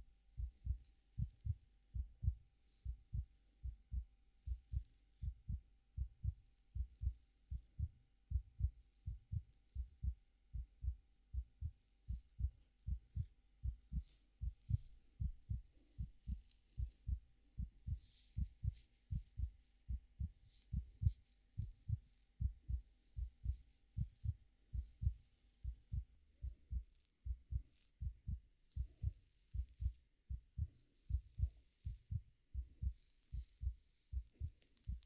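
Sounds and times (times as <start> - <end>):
fingers rustling through hair: 0.3 - 1.6, 11.6 - 17.2, 17.8 - 35.0
heartbeat double thumps: 0.4 - 35.0.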